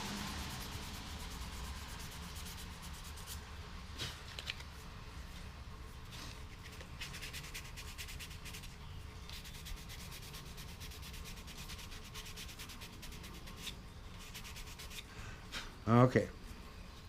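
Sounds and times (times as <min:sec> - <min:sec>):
sandpaper rasping on wood: 0:00.2 - 0:03.4, 0:06.5 - 0:15.1.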